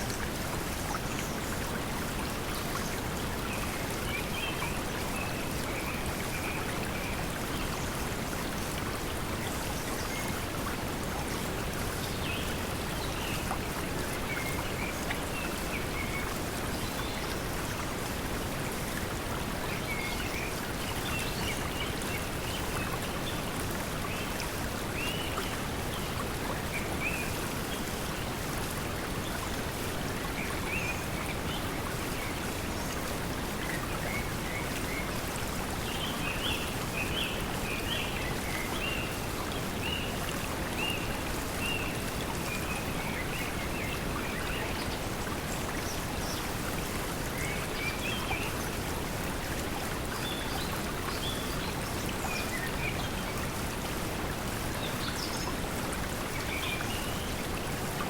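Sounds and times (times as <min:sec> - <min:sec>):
flowing water: 0:00.0 - 0:58.0.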